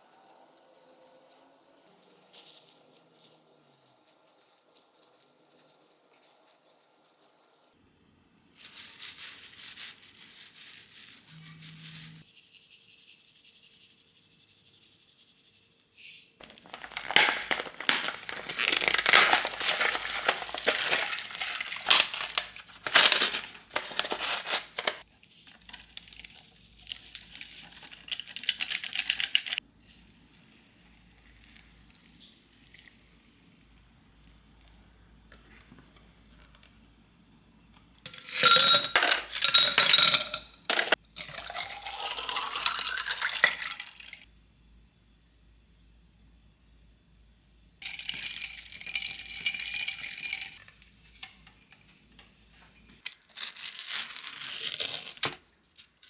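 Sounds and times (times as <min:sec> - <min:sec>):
crinkling and crumpling: 0:16.4 - 0:29.6, 0:38.1 - 0:41.0.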